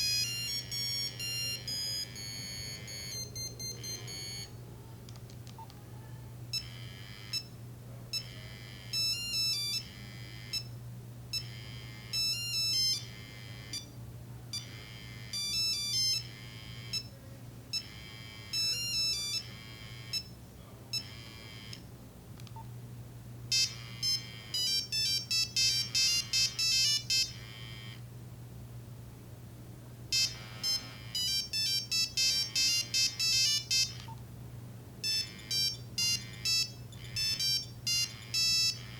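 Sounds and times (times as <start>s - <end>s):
monophonic phone ringtone: 0.0s - 4.6s, 6.5s - 7.5s, 8.1s - 10.7s, 11.3s - 13.9s, 14.5s - 21.8s, 23.5s - 28.0s, 30.1s - 34.2s, 35.0s - 38.9s.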